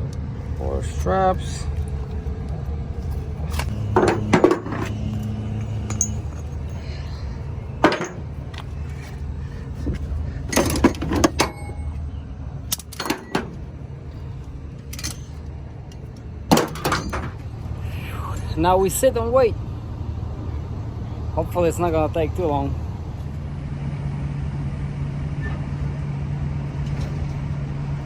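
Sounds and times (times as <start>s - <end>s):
diesel engine idling: 0.0s - 28.0s
sharp knocks and clanks: 1.4s - 11.8s, 12.7s - 17.6s.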